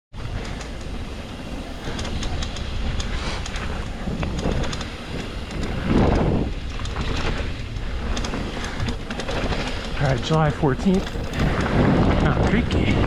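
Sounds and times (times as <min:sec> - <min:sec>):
rattling clicks: 0:00.2 - 0:12.8
wind buffeting microphone: 0:00.2 - 0:13.0.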